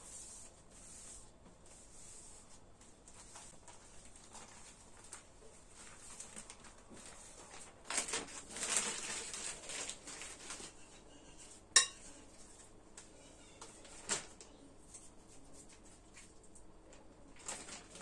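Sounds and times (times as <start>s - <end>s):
soft rustling and scraping: 0.0s - 18.0s.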